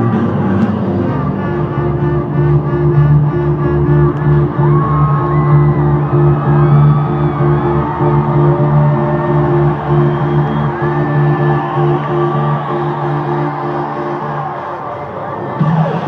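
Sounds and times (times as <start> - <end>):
electronic dance music: 0.0 - 16.0
crowd whooping and shouting: 3.8 - 16.0.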